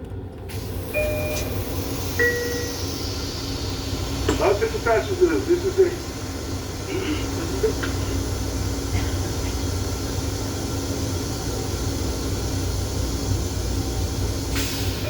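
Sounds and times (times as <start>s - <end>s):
railcar interior rumble: 0.0s - 15.0s
ventilation hiss: 3.7s - 15.0s.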